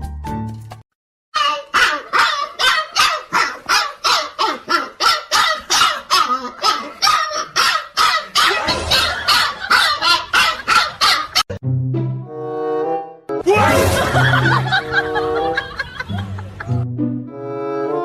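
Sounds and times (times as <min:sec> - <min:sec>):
dog barking: 0:01.4 - 0:11.5.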